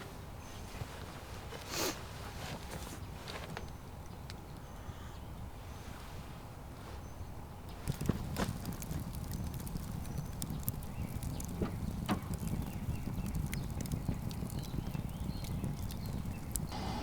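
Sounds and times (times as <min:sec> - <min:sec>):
campfire crackling and popping: 0:07.7 - 0:17.0
low steady rumble: 0:09.5 - 0:17.0.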